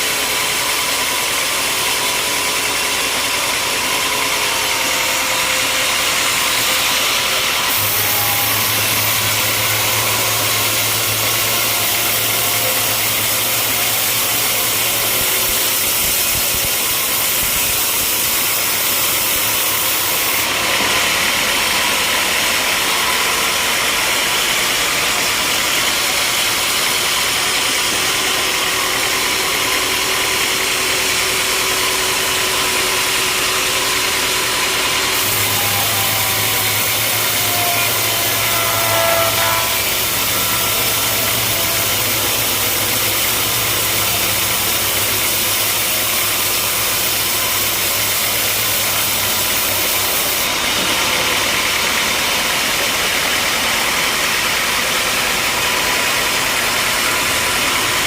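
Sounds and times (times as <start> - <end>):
sawmill machinery running: 0.0 - 58.0
short rising and falling whine: 3.9 - 15.9, 33.8 - 47.6
low hum: 35.2 - 45.4.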